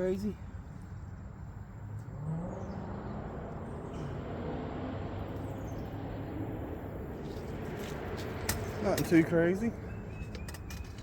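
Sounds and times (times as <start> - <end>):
vehicle engine rumble: 0.0 - 11.0
faint bird chirps: 9.8 - 11.0.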